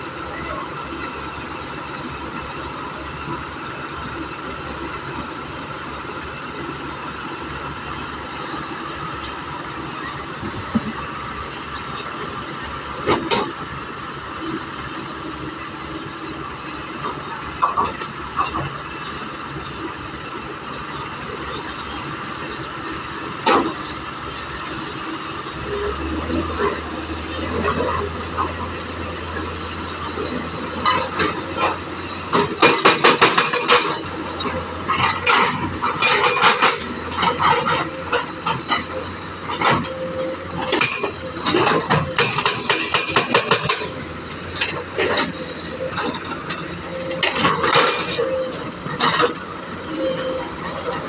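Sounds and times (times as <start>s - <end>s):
excavator diesel engine running: 0.0s - 51.0s.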